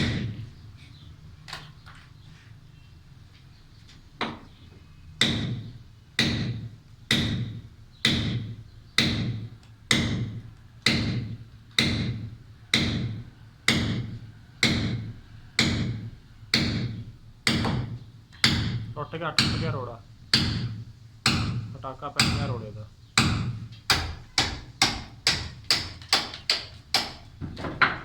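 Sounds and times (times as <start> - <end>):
hammer striking chisel: 5.2 - 22.6, 23.2 - 28.0.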